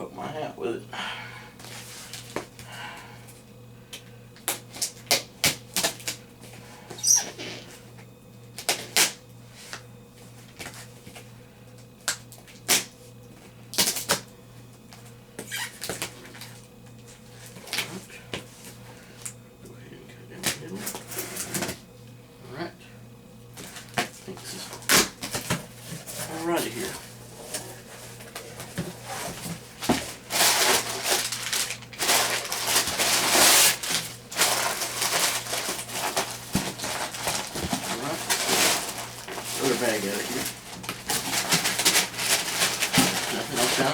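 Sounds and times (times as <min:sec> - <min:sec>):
low electrical hum: 0:00.0 - 0:43.9
packaging crinkling: 0:23.6 - 0:43.9.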